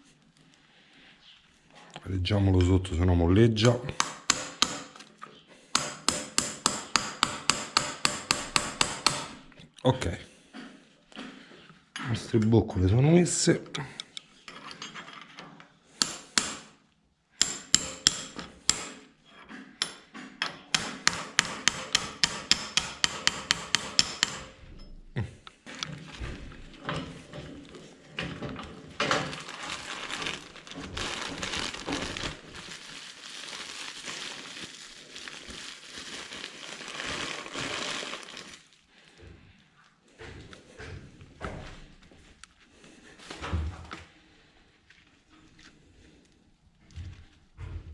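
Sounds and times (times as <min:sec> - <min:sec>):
sharp metal-on-metal taps: 0:17.4 - 0:19.0, 0:19.8 - 0:24.5.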